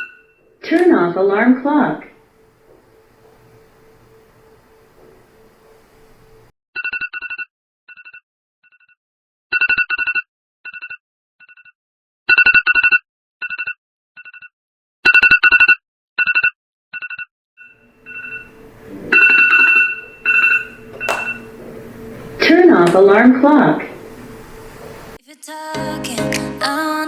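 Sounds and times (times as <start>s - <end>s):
alarm clock two-pitch beeps: 17.9s - 24.4s.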